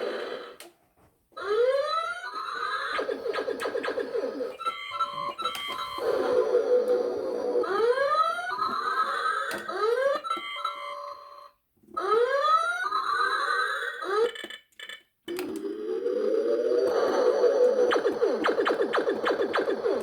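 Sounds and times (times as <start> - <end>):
fast electronic pulses: 3.0 - 4.7, 15.8 - 20.0.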